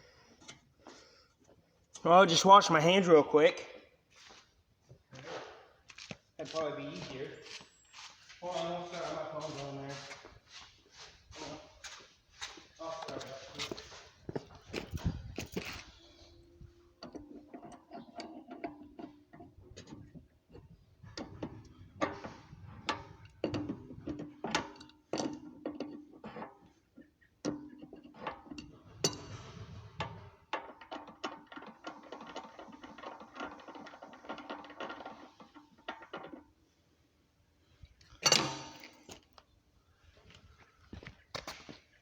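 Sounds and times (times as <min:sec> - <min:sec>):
objects knocking and clattering: 0:17.0 - 0:36.7, 0:38.0 - 0:39.5.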